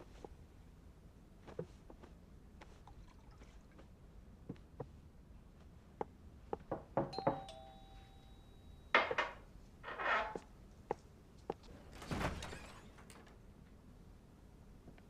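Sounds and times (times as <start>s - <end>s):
two-note doorbell chime: 7.1s - 8.9s.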